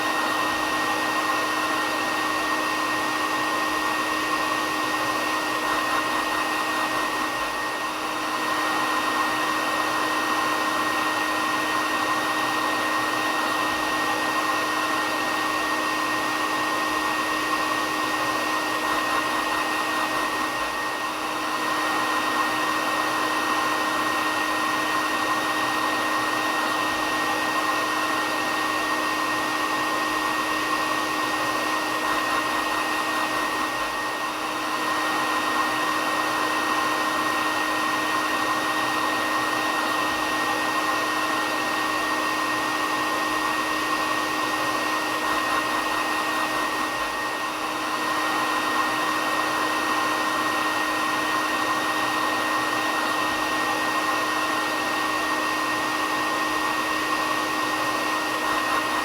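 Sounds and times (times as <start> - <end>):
hair dryer running: 0.0 - 59.0.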